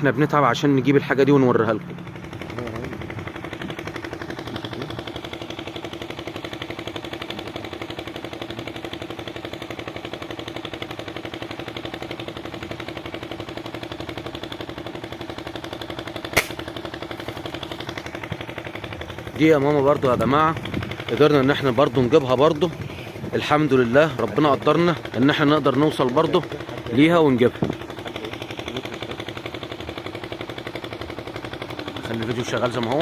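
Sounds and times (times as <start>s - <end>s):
small engine puttering: 0.0s - 33.0s
sharp click: 16.3s - 16.6s.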